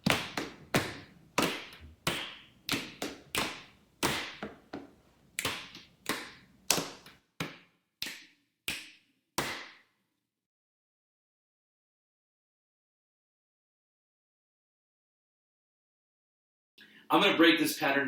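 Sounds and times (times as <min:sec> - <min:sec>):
stomps: 0:00.0 - 0:07.6
hand claps: 0:00.0 - 0:09.9
thigh and belly slaps: 0:00.0 - 0:09.9
finger snaps: 0:08.0 - 0:09.8.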